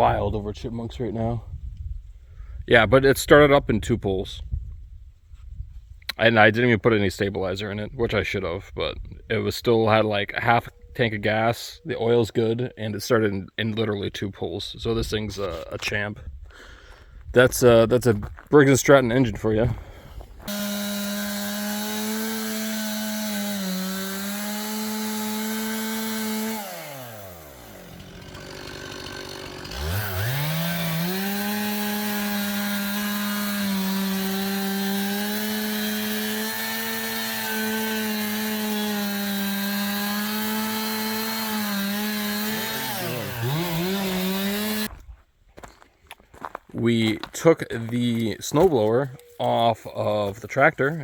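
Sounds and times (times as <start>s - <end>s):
chainsaw cutting wood: 20.4s - 45.0s.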